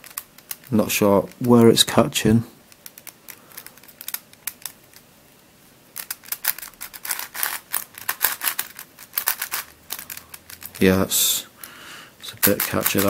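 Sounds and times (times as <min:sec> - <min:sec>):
plastic puzzle clicking: 0:00.0 - 0:01.7, 0:02.7 - 0:05.0, 0:06.0 - 0:11.0, 0:11.6 - 0:13.0.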